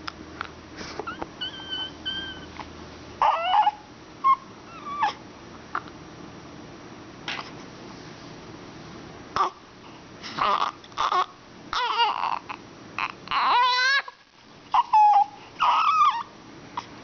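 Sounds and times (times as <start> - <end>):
pet whining and squeaking: 1.0 - 5.2, 10.4 - 17.0.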